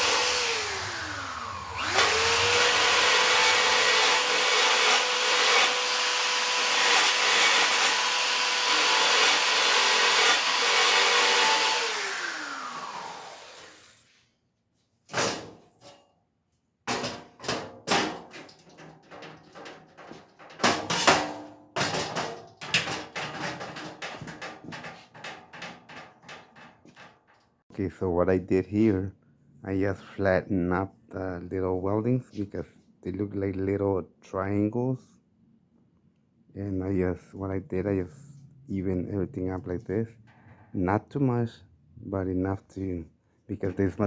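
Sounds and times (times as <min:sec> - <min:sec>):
electric grinder running: 0:00.0 - 0:14.1
metal parts knocking and clattering: 0:16.9 - 0:27.4.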